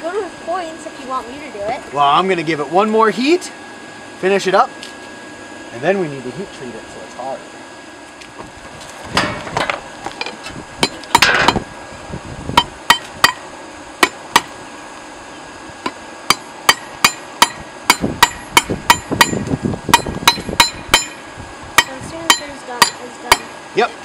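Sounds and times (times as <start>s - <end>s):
hammer ringing on hot steel: 12.6s - 13.4s, 14.0s - 14.5s, 16.3s - 21.2s, 21.8s - 23.5s.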